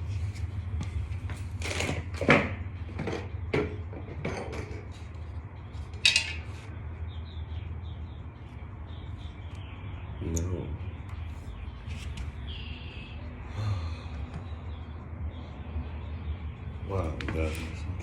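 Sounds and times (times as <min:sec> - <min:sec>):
steady low hum: 0:00.0 - 0:18.0
metal tools clinking: 0:06.0 - 0:06.5.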